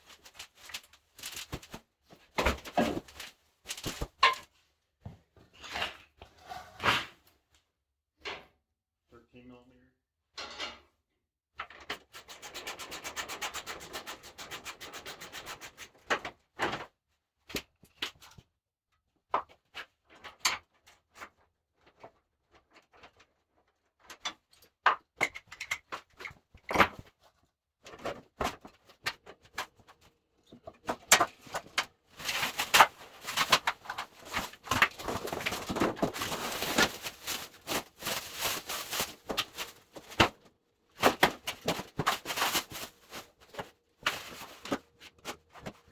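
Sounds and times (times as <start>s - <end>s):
rubbing and scraping: 30.8s - 45.9s.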